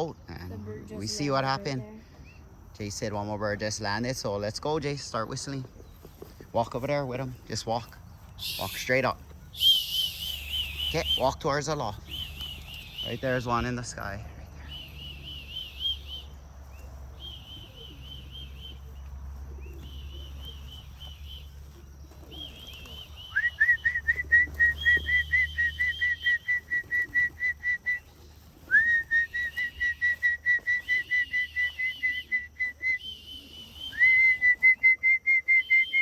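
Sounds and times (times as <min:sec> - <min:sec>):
warbling trilled whistle: 0:09.6 - 0:10.9
rapid pulsed whistle notes: 0:09.6 - 0:11.3, 0:14.6 - 0:16.4, 0:17.1 - 0:18.9, 0:22.4 - 0:28.0, 0:28.7 - 0:36.0.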